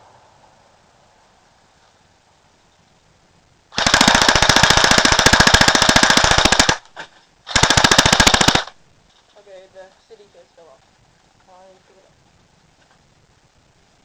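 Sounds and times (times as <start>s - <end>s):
airsoft gun firing full auto: 3.7s - 6.9s, 7.5s - 8.8s.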